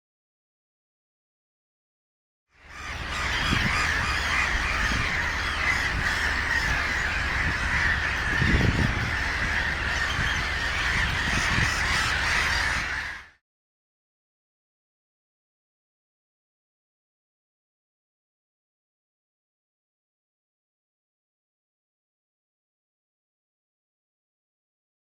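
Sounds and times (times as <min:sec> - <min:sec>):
flock of birds calling: 0:02.6 - 0:13.4
wind rumble on microphone: 0:02.7 - 0:13.2.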